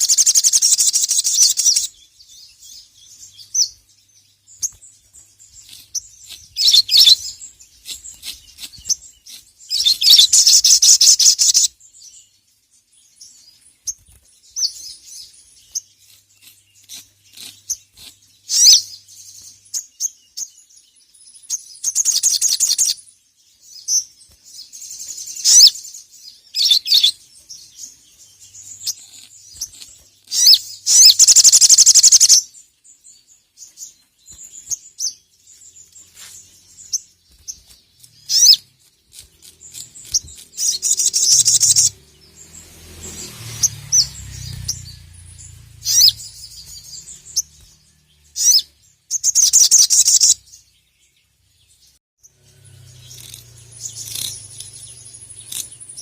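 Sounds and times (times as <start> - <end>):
bird buzzing trills: 52.2 - 56.0.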